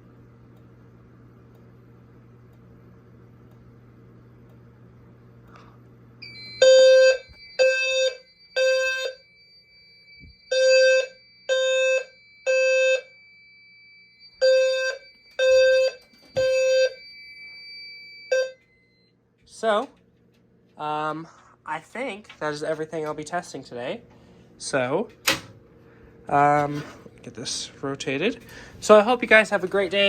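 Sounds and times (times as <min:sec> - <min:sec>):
fire alarm horn beeps: 0:06.2 - 0:19.2.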